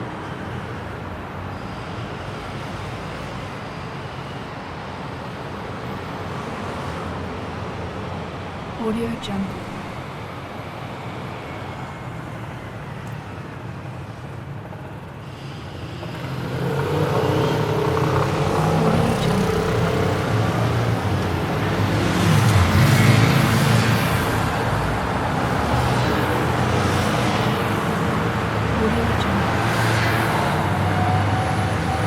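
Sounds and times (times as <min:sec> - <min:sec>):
street traffic road noise: 0:00.0 - 0:32.0
engines passing close by: 0:15.9 - 0:32.0.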